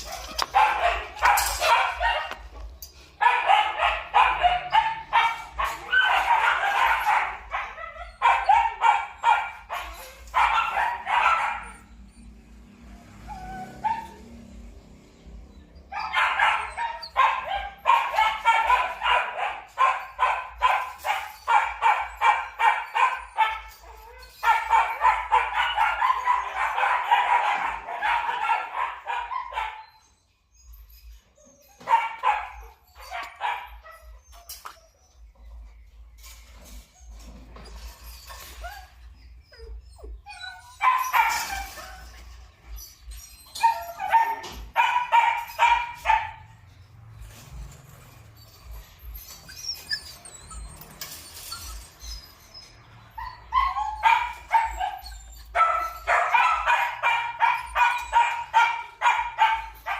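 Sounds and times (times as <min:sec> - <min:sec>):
dog barking: 0:00.0 - 0:02.5, 0:03.2 - 0:11.9, 0:15.9 - 0:23.7, 0:24.4 - 0:29.8, 0:31.8 - 0:33.8, 0:43.7 - 0:46.6, 0:53.6 - 0:59.9.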